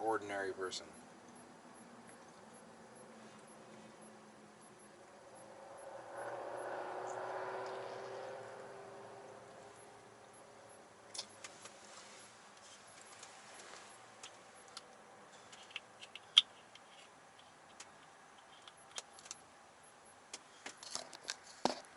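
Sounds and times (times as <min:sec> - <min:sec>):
small clicks and taps: 0:14.2 - 0:19.4.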